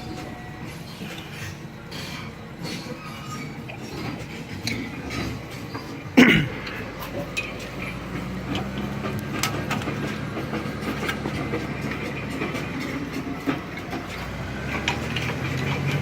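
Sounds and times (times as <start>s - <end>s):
steady low hum: 0.0s - 14.7s.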